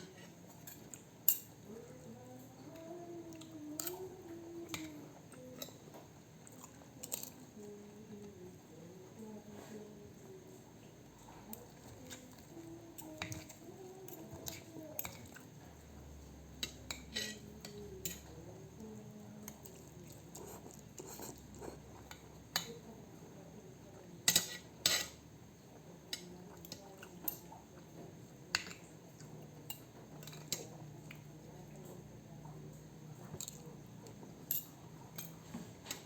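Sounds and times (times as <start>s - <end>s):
cutlery clinking on a plate: 16.6s - 18.3s, 24.3s - 25.2s.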